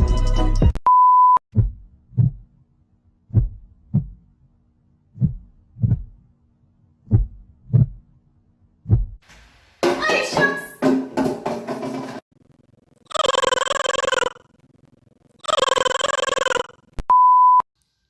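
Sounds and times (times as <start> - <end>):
music: 0.0 - 0.8, 9.8 - 12.2
short steady beep: 0.9 - 1.4, 17.1 - 17.6
heartbeat thumps: 1.5 - 2.5, 3.3 - 4.3, 5.2 - 6.2, 7.0 - 8.1, 8.8 - 9.2.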